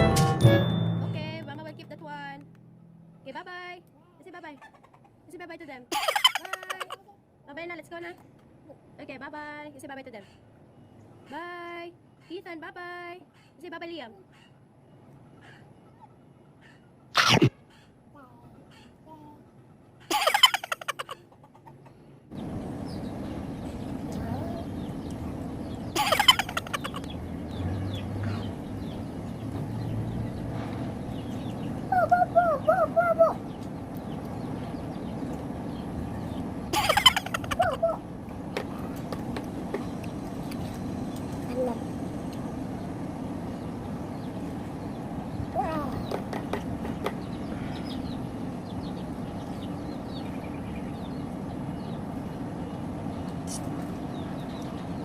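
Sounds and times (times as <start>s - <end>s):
small birds chirping: 13.3s - 55.0s
steady low hum: 22.2s - 55.0s.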